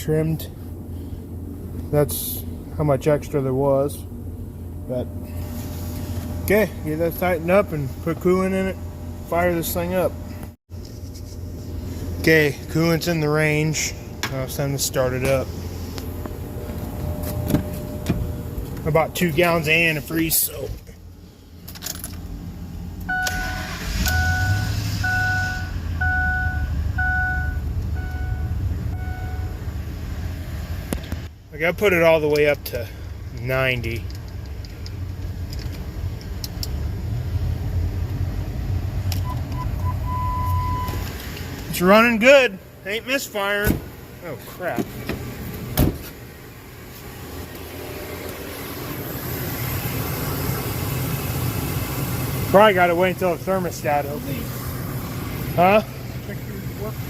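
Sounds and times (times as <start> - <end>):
car engine starting and idling: 11.3 - 57.0
dashboard warning chime: 23.1 - 29.6, 39.2 - 41.0
car engine idling: 42.6 - 57.0.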